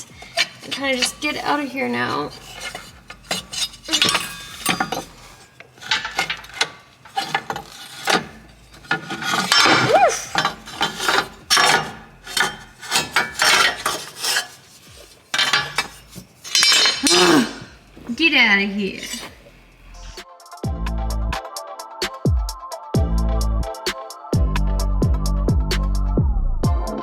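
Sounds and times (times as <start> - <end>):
metal clanking and scraping: 0.0 - 20.2.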